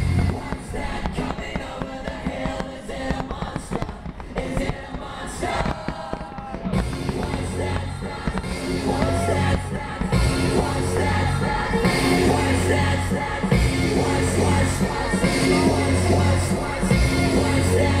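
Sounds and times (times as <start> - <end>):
firework bangs and crackles: 0.0 - 18.0
pop music with singing: 0.0 - 18.0
heavy bass beat: 5.7 - 18.0.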